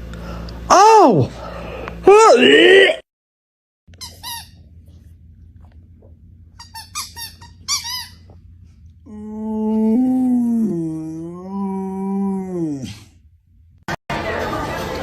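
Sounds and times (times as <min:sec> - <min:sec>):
dog howling: 0:09.1 - 0:13.1.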